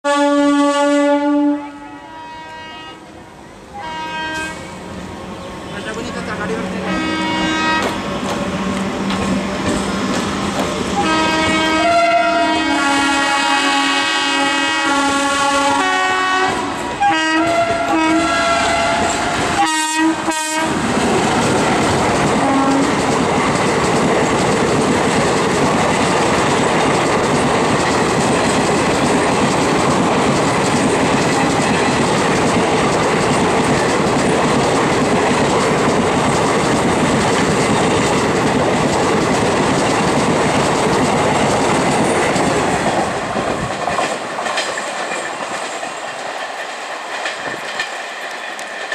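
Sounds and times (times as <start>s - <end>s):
train horn: 0.0s - 4.8s, 6.8s - 8.0s, 11.0s - 20.9s, 22.4s - 23.0s
train coaches rushing past: 1.7s - 48.9s.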